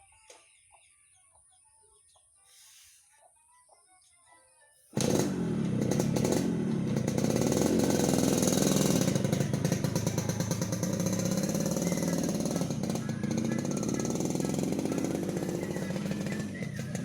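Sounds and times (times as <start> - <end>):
faint bird chirps: 0.0 - 4.9, 9.2 - 17.0
motorcycle engine raspy growl: 5.0 - 17.0.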